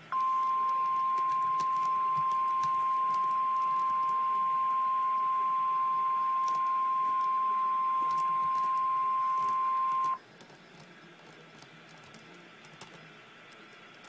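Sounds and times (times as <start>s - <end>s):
faint radio hiss: 0.0s - 14.0s
steady high alert beep: 0.1s - 10.2s.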